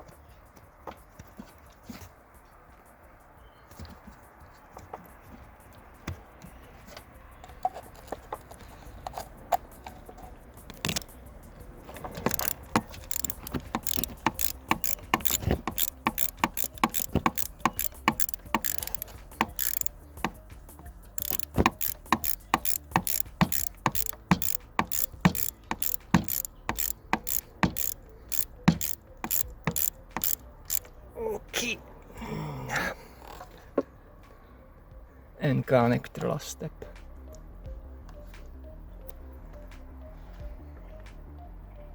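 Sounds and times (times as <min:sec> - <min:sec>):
ratchet wrench clicking: 0:10.8 - 0:11.1, 0:12.1 - 0:20.4, 0:21.2 - 0:30.9.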